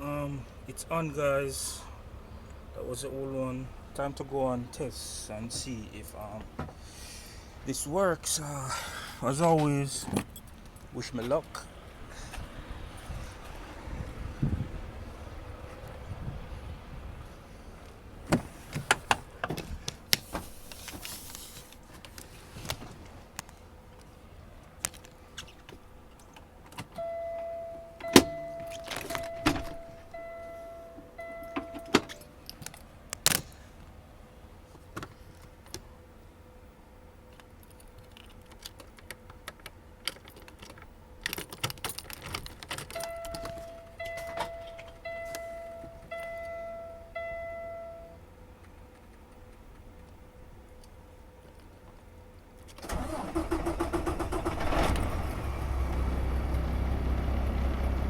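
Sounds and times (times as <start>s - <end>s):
short beeps: 27.0s - 32.3s, 43.0s - 48.2s
dashboard warning chime: 27.0s - 32.4s, 43.0s - 48.2s
keys jangling: 27.3s - 30.5s, 40.1s - 45.5s.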